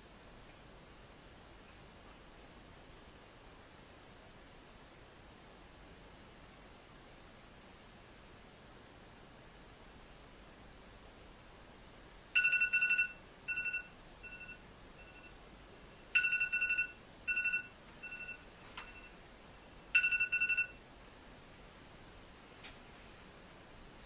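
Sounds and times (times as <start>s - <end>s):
electronic alarm beeping: 12.4s - 15.4s, 16.1s - 19.2s, 19.9s - 20.8s.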